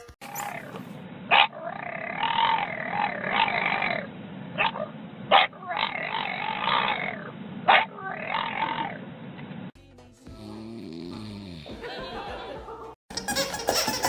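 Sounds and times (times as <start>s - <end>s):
dog barking: 0.4s - 4.0s, 4.6s - 9.0s.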